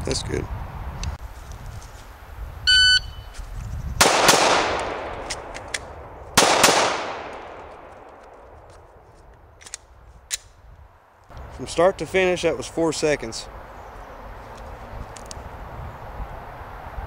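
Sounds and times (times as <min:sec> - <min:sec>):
electronic timer beep: 0:02.7 - 0:03.3
pistol shots echoing: 0:04.0 - 0:08.5.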